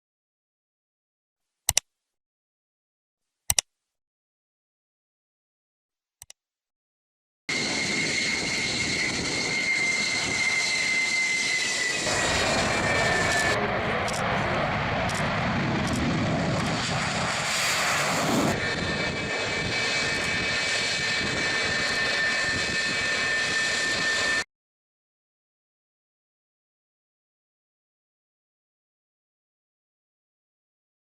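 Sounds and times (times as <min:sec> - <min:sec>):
drone motors whining: 0:07.5 - 0:24.4.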